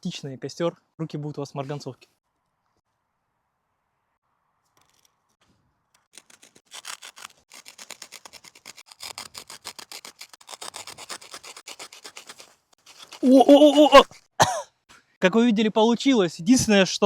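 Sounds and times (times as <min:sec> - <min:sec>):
stick scratching powder: 0:06.1 - 0:13.6.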